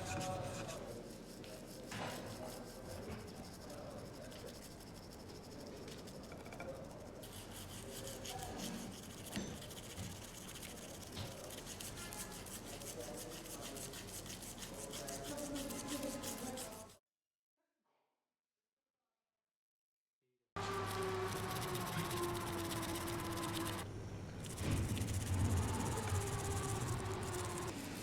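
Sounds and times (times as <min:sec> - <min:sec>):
brush scrubbing metal: 0:00.0 - 0:17.0, 0:20.6 - 0:23.8, 0:24.4 - 0:28.0.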